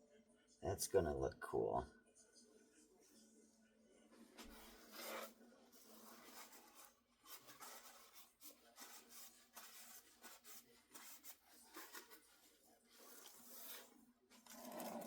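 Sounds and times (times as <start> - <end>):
faint scratching and rubbing: 4.2 - 15.0.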